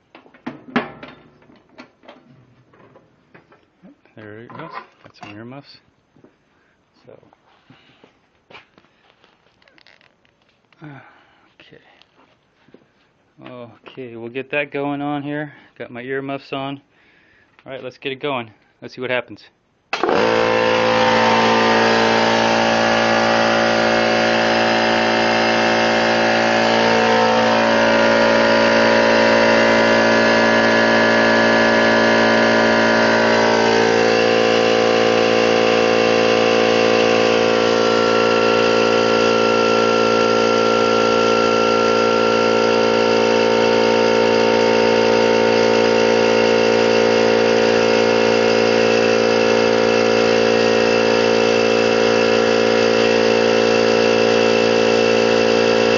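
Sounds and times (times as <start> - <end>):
air compressor running: 19.9 - 55.9.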